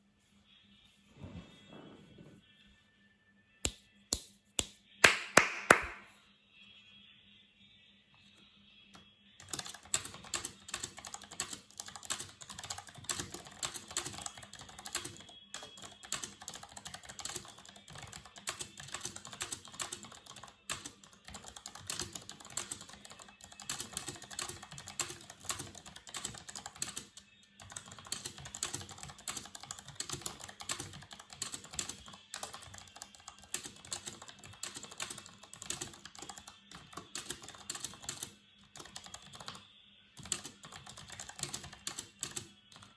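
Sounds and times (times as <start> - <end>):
mechanical keyboard typing: 9.4 - 39.6, 40.2 - 42.9.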